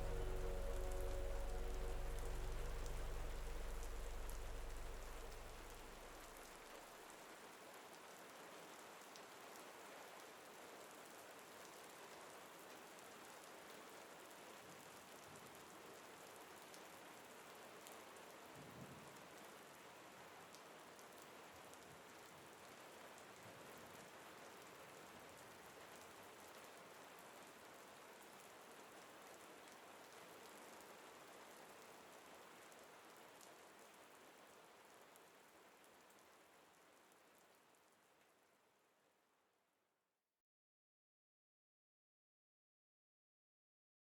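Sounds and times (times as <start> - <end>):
faint steady rain pattering: 0.0 - 39.9.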